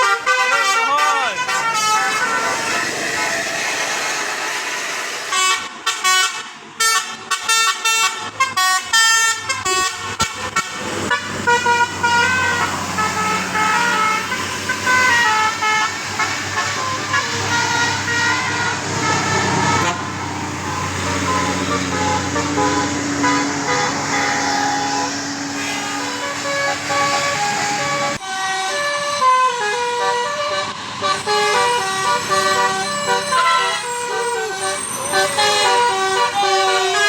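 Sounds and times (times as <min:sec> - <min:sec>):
multi-tone musical air horn: 0:00.0 - 0:37.0.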